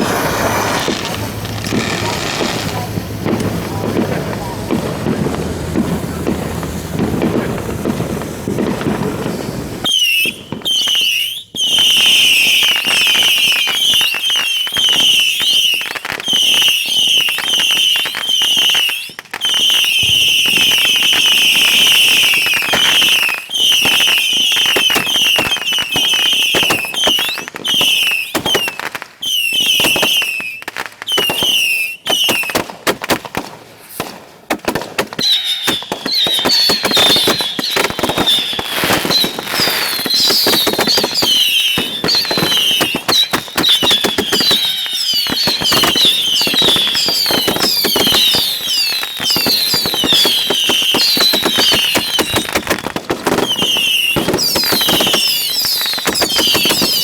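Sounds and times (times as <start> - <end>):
fireworks popping and banging: 0.0 - 57.0
fireworks whistling: 0.0 - 57.0.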